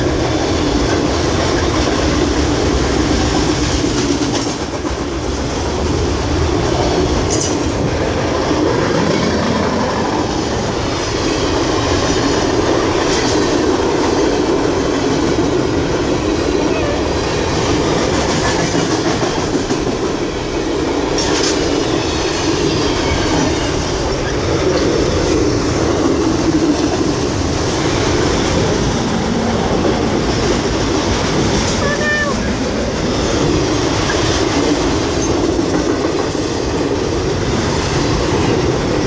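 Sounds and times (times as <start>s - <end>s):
steel wheels clattering on track: 0.0s - 14.0s.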